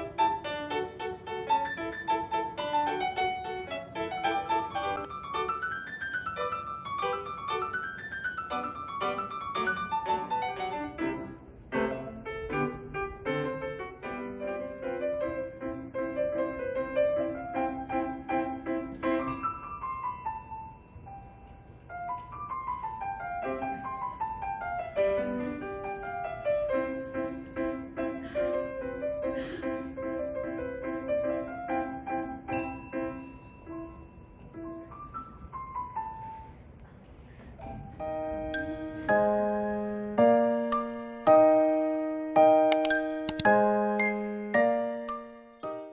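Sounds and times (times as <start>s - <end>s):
bright bell ding: 19.3s - 20.6s, 32.6s - 34.0s, 38.6s - 45.9s
piano playing: 38.6s - 45.9s.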